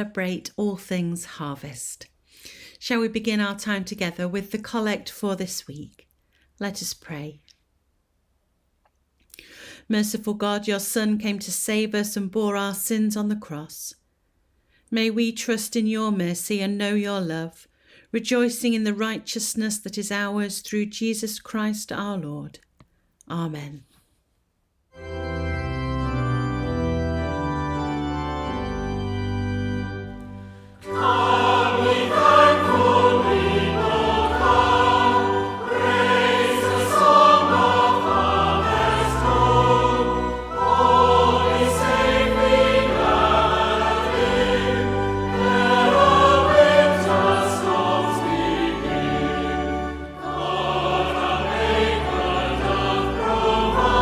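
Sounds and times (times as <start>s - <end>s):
organ chords: 24.9s - 54.0s
church choir singing a hymn: 26.2s - 54.0s.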